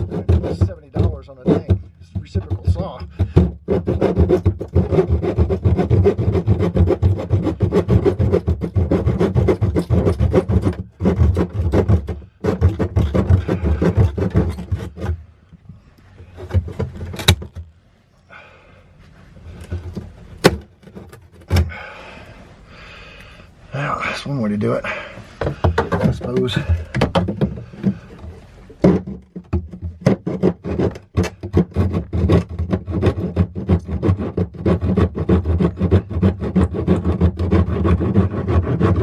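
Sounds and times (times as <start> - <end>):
reciprocating saw cutting pipe: 0.0 - 15.2, 27.6 - 39.0
pipe knocking: 0.0 - 17.7, 24.9 - 39.0.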